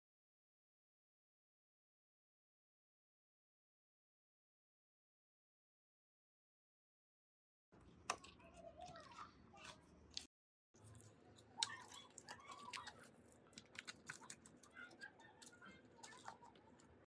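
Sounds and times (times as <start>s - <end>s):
small hard parts clicking and rattling: 10.8s - 17.0s.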